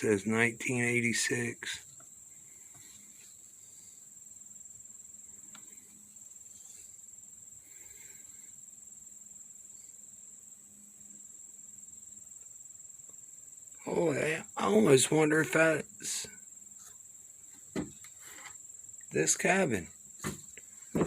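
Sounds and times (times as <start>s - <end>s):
crickets trilling: 0.0s - 21.0s
faint knock: 17.7s - 18.0s, 20.2s - 21.0s.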